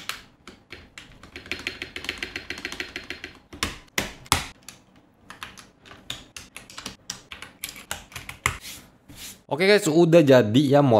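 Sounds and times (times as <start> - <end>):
mechanical keyboard typing: 0.0 - 8.5.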